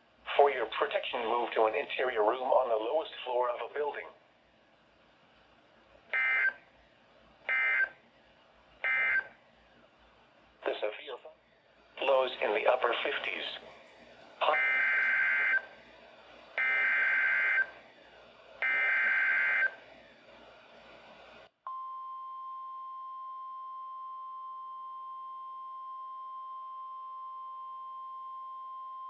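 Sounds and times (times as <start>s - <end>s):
steady alarm tone: 6.2s - 6.6s, 7.5s - 7.9s, 8.8s - 9.3s, 14.5s - 15.7s, 16.6s - 17.7s, 18.6s - 19.8s.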